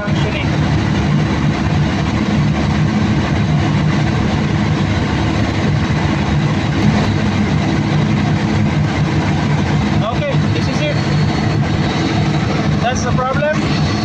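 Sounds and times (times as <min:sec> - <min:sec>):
diesel generator engine running: 0:00.0 - 0:14.0.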